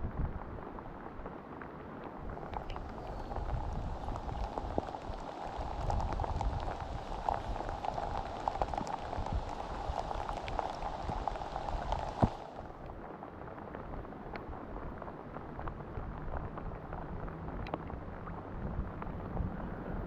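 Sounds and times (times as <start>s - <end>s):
rain falling: 0.0s - 20.0s
raindrop ticks: 0.1s - 19.4s.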